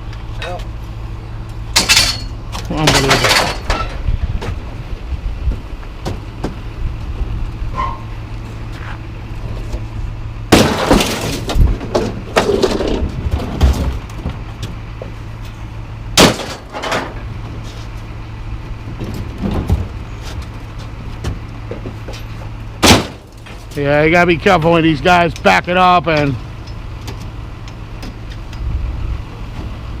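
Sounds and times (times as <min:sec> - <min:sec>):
engine running: 0:00.0 - 0:30.0
scrap metal crashing onto pile: 0:01.8 - 0:04.0, 0:10.5 - 0:14.0, 0:16.2 - 0:17.2.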